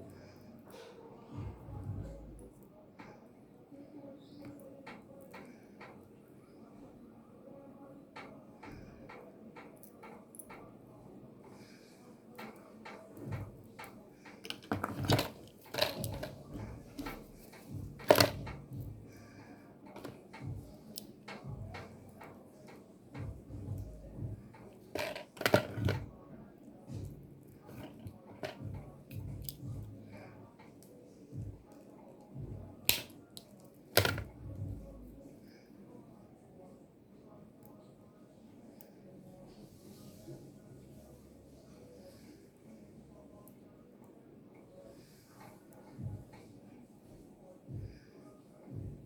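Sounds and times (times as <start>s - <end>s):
hands handling cable and tools: 12.3s - 23.9s, 24.5s - 26.1s, 27.0s - 30.0s, 31.7s - 34.8s
cutting tool snipping cable wires: 32.8s - 34.1s.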